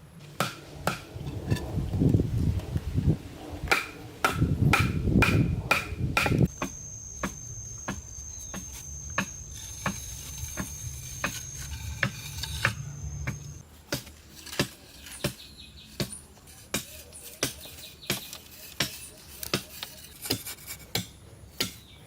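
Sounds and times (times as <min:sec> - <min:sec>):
hand tool strikes: 0:03.7 - 0:15.4, 0:16.0 - 0:21.9
high-pitched insect call: 0:06.5 - 0:13.6.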